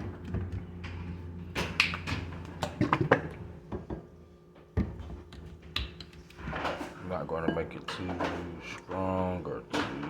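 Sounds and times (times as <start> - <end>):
appliance hum: 0.0 - 10.0.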